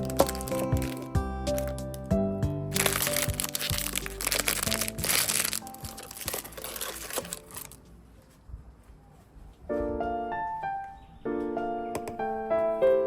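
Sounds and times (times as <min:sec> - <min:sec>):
packaging clicks: 0:00.0 - 0:02.1, 0:02.7 - 0:07.8
packaging crinkling and crackling: 0:00.0 - 0:02.1, 0:02.7 - 0:07.8
background music: 0:00.0 - 0:08.1, 0:09.7 - 0:13.0.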